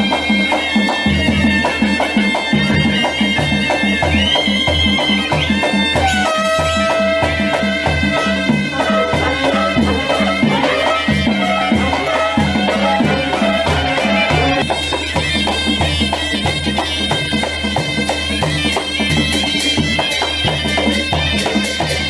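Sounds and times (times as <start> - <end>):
instrumental folk melody: 0.0 - 22.0
steady drum beat: 0.0 - 22.0.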